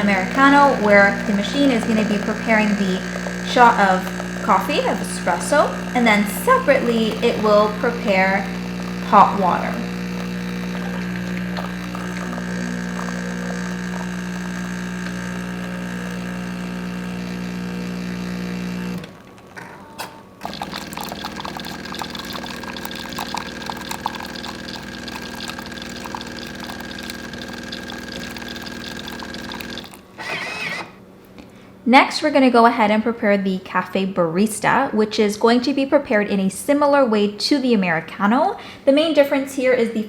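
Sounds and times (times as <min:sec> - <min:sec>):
water pouring into cup: 0:00.0 - 0:19.1, 0:20.4 - 0:30.1
espresso machine pump humming: 0:00.0 - 0:19.2, 0:20.4 - 0:30.9.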